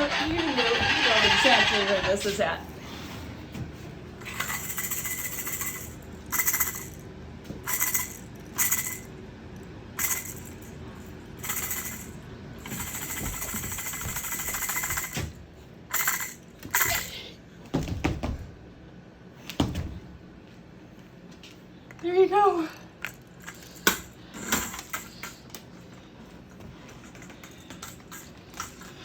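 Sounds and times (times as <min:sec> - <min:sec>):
toy car clattering: 0:00.0 - 0:02.4.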